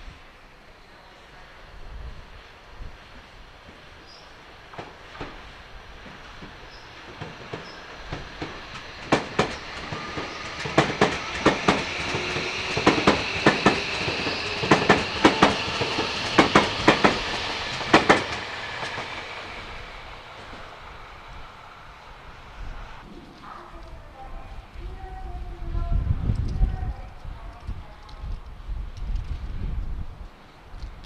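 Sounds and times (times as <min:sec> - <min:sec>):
electric train running whine: 0:00.0 - 0:23.1
train wheels clicking over rail joints: 0:00.3 - 0:31.0.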